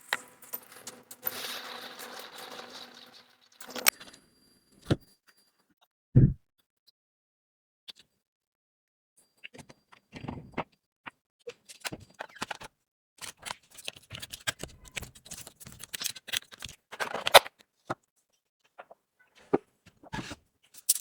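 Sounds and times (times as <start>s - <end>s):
scraping clatter: 0.0s - 4.2s.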